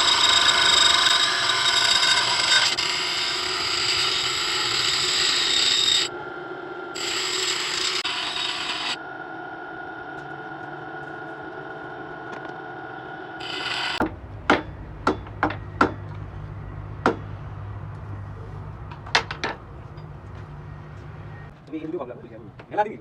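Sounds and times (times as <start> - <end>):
steady whine: 0.0 - 21.6
low machine hum: 6.1 - 21.6.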